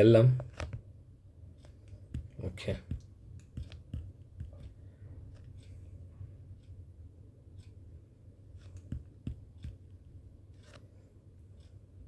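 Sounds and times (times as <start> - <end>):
low steady hum: 0.0 - 12.0
computer keys and mouse clicks: 1.6 - 5.9, 8.5 - 11.0.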